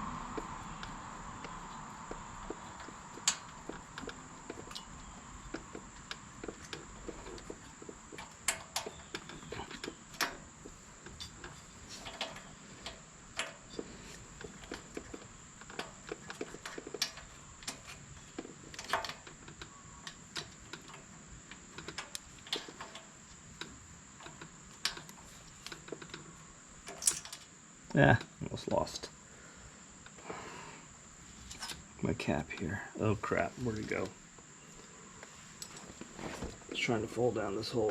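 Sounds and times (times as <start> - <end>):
faint high-pitched whine: 0.0 - 37.9
small metal parts clicking: 2.4 - 27.5, 31.5 - 31.8.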